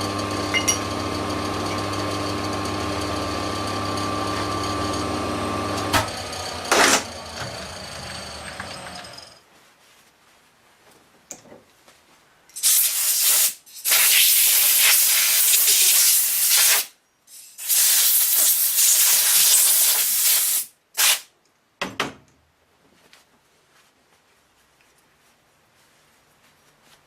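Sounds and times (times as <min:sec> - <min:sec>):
pressurised spray hissing: 0:12.6 - 0:16.9, 0:17.6 - 0:21.2.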